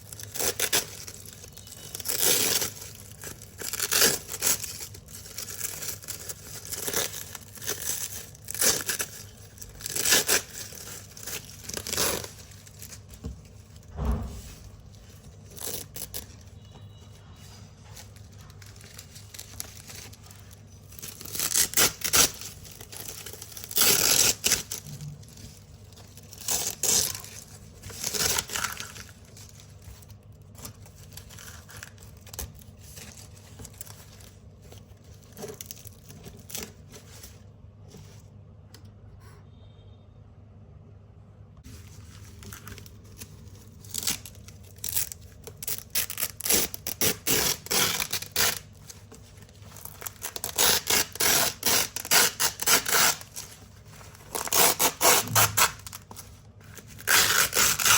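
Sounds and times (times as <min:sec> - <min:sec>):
velcro strips ripping: 0:00.0 - 0:13.2, 0:18.2 - 0:34.3, 0:42.4 - 0:57.9.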